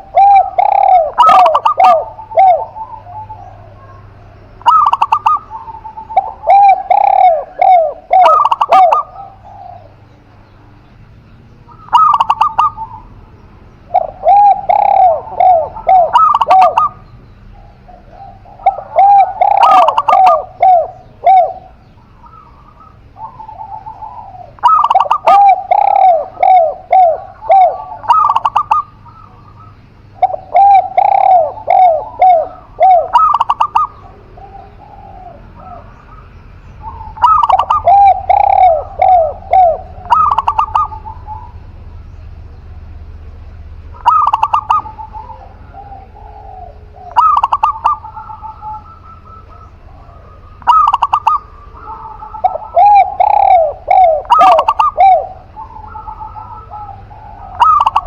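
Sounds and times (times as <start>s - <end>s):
doves cooing: 0.0s - 58.0s.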